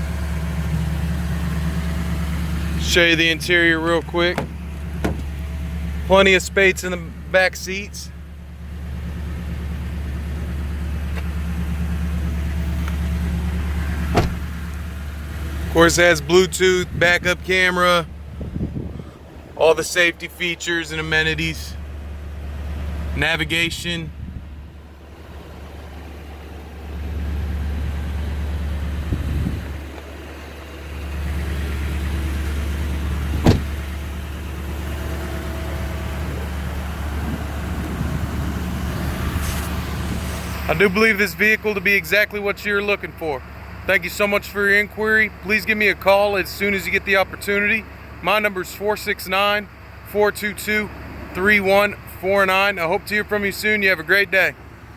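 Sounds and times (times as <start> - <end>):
truck engine idling: 0.0 - 54.9.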